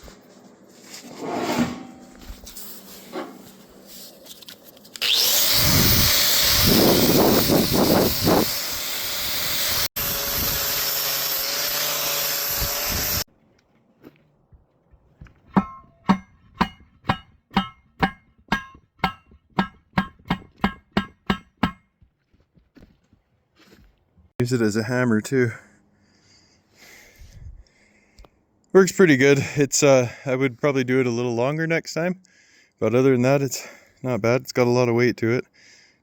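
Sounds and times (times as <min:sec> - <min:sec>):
power tool cutting steel: 0:05.0 - 0:13.3
steel post pounder striking: 0:15.3 - 0:21.9.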